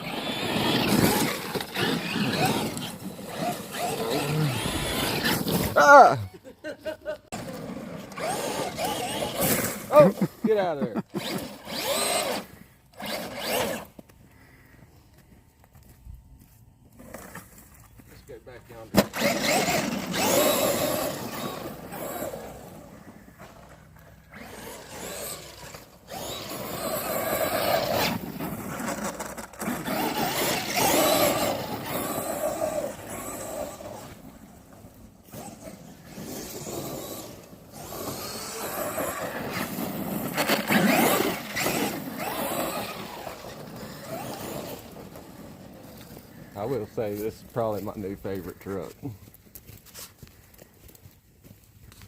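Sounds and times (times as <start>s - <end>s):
toy truck electric motor whining: 0.0s - 6.2s, 7.4s - 10.2s, 11.1s - 14.0s, 19.0s - 46.3s.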